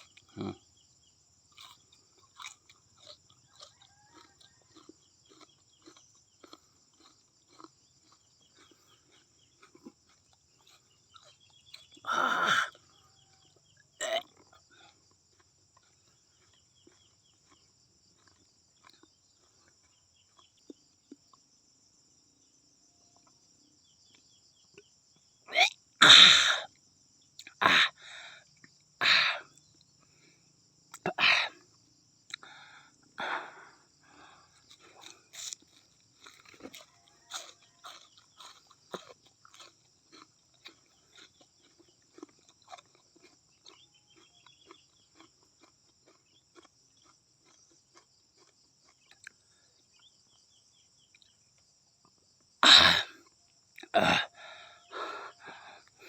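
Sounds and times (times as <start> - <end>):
quiet chewing: 0.0 - 25.8, 26.7 - 56.0
wet crunching bites: 34.6 - 49.4.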